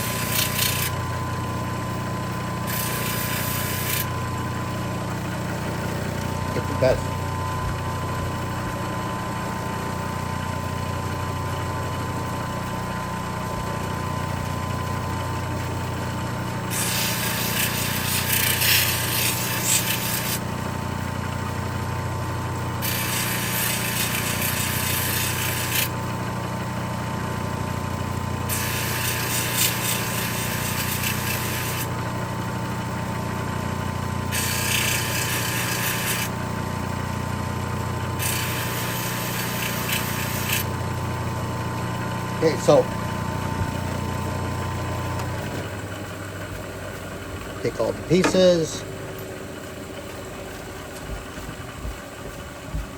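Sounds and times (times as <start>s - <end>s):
gritty grinding hiss: 0.0s - 0.9s, 16.7s - 20.4s, 22.8s - 25.9s, 28.5s - 31.9s, 34.4s - 36.3s, 38.2s - 40.7s
machine motor hum: 0.0s - 52.9s.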